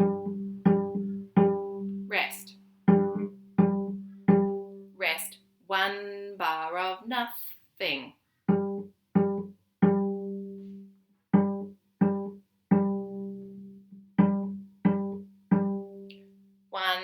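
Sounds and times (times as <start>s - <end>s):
cello string plucked pizzicato: 0.0s - 5.1s, 8.4s - 16.6s.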